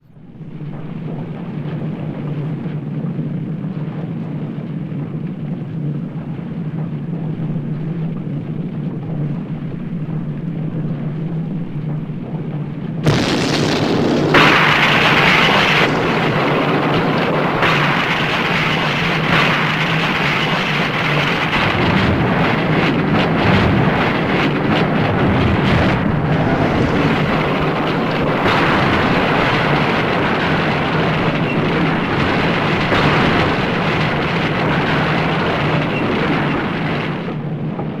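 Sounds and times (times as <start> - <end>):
earthquake rumbling and crashing: 0.0 - 38.0
steady low hum: 0.0 - 38.0.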